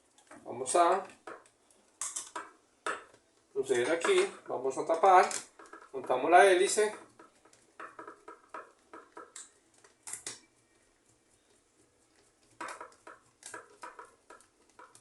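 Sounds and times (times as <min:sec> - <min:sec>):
plastic fan parts clicking: 0:00.1 - 0:10.5, 0:12.1 - 0:15.0.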